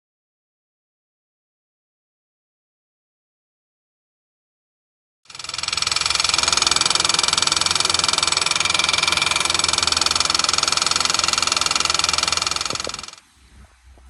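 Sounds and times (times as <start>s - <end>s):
car engine running: 5.3s - 13.2s
fuel pump ticking clatter: 5.3s - 13.2s.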